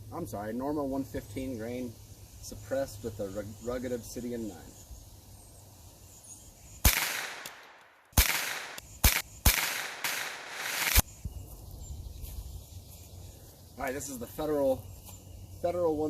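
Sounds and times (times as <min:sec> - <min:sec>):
suppressed gunshots with echo: 0:06.8 - 0:11.0.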